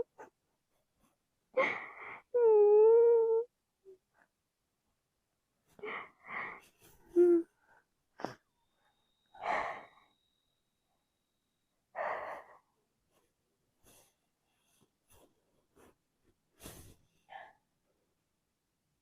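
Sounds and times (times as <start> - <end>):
person whimpering: 1.6 - 3.5, 7.2 - 7.5.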